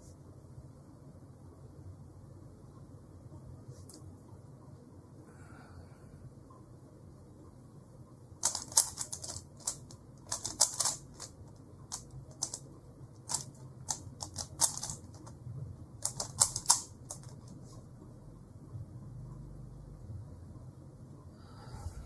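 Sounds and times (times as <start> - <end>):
puzzle cube layers clicking: 8.4 - 15.4, 16.0 - 17.6.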